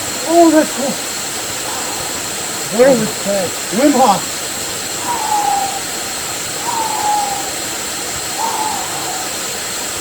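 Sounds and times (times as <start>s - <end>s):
waterfall rushing: 0.0s - 10.0s
bird falling whistle: 6.6s - 7.6s.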